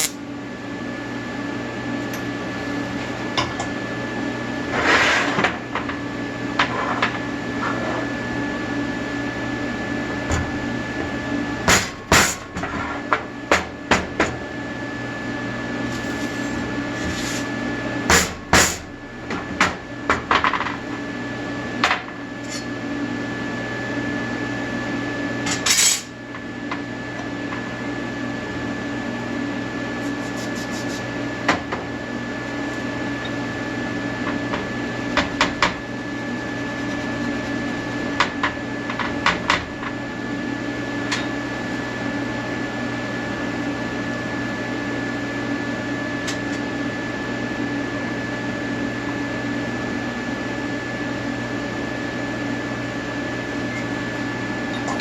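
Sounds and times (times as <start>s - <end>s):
arc welder buzzing: 0.0s - 0.8s, 8.3s - 13.5s, 14.6s - 21.0s, 25.4s - 26.4s, 29.9s - 31.4s.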